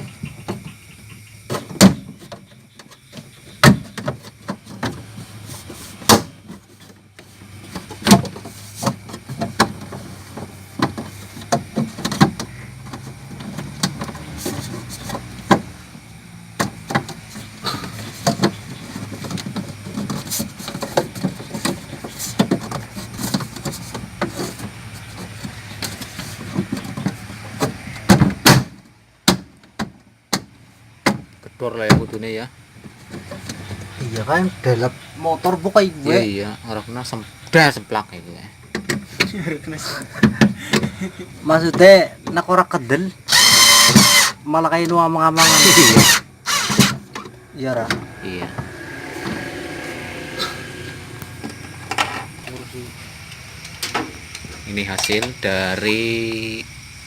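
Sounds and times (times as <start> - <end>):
sharp knocks and clicks: 16.5 - 32.2.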